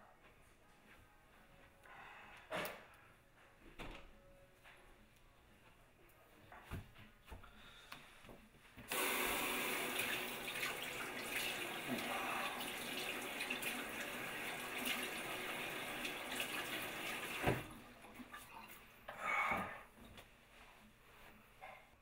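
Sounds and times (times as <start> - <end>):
tap water running into sink: 8.9 - 18.4.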